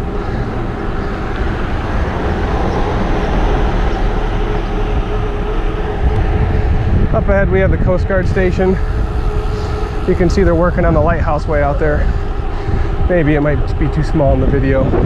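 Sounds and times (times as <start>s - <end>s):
bike tyres rolling: 0.0s - 15.0s
wind buffeting microphone: 0.0s - 15.0s.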